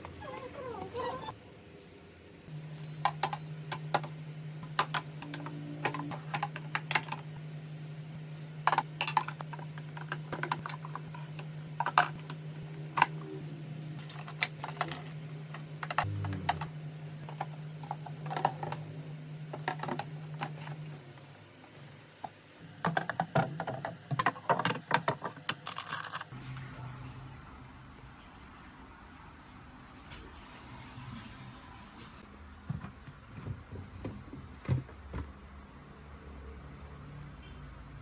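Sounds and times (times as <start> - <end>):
steady low hum: 1.4 - 22.7
plastic containers clicking and knocking: 22.8 - 25.7.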